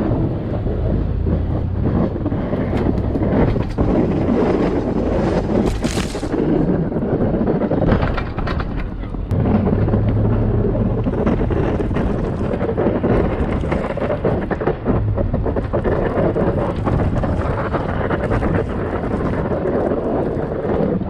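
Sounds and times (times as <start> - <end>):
vehicle engine humming: 0.0 - 6.6, 8.6 - 19.3
wind buffeting microphone: 0.0 - 21.0.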